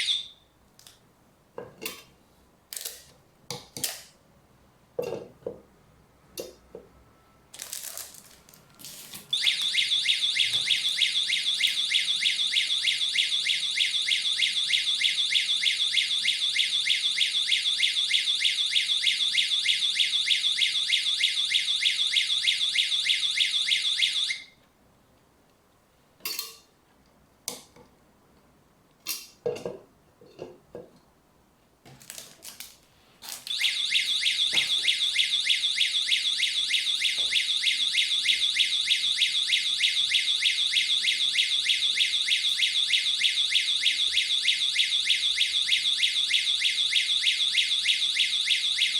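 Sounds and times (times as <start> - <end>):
alarm siren pulsing electronic tone: 0.0 - 0.4, 9.3 - 24.5, 33.5 - 48.9.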